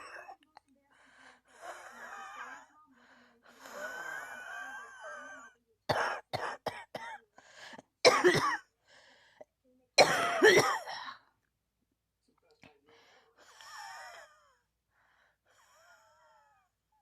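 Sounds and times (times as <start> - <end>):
person coughing: 0.0 - 0.4, 4.0 - 7.2, 8.0 - 8.6, 10.0 - 11.2.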